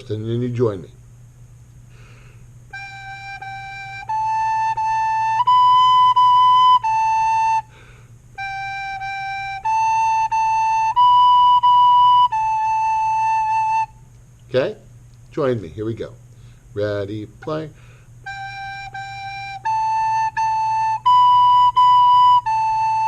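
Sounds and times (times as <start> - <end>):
recorder playing notes: 2.7 - 14.0, 18.2 - 23.0.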